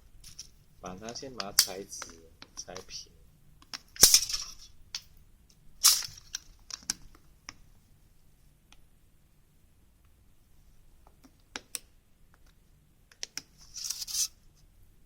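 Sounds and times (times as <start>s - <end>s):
thin aluminium sheet clattering: 4.0s - 4.6s.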